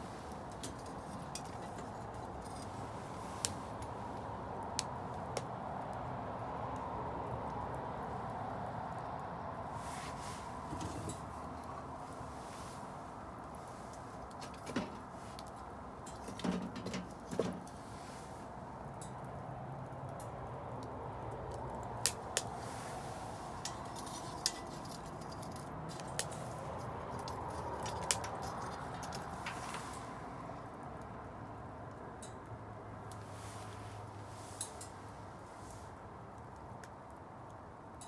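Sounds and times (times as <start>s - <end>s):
burning wood popping: 0.0s - 8.5s, 9.6s - 19.4s, 20.0s - 30.8s
bonfire flames rushing: 0.0s - 19.4s, 20.1s - 31.2s.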